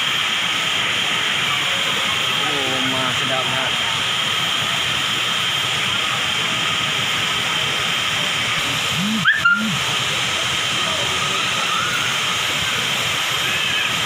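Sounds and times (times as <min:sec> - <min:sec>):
waterfall and rushing stream: 0:00.0 - 0:04.5
person's short vocal sound: 0:08.9 - 0:09.8.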